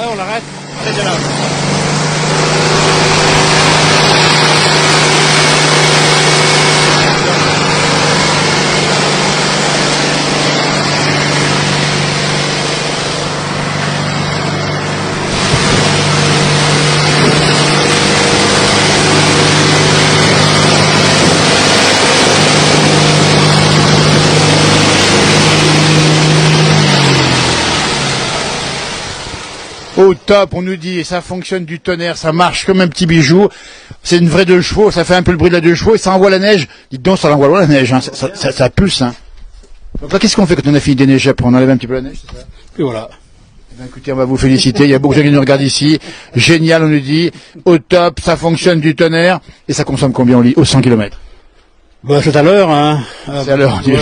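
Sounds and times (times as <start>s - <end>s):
snow blower engine running: 0.0s - 30.4s
broad rushing noise: 0.0s - 31.0s.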